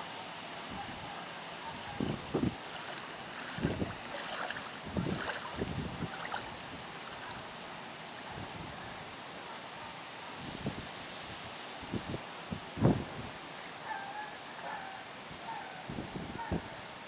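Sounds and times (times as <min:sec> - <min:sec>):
steady rushing wind: 0:01.7 - 0:09.2
wind gusting against microphone: 0:01.8 - 0:07.6, 0:11.8 - 0:13.4.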